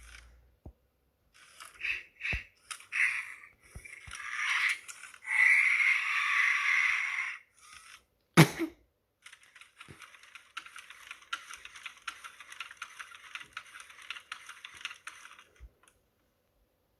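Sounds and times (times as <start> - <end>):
toy robot gears clattering: 1.4 - 8.0.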